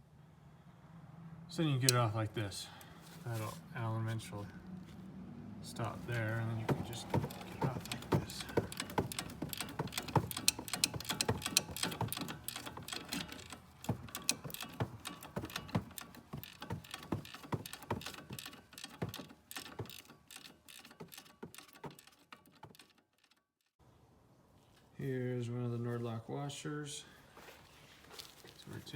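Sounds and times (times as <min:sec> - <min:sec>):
ratcheting wrench clicking: 0:06.7 - 0:23.4.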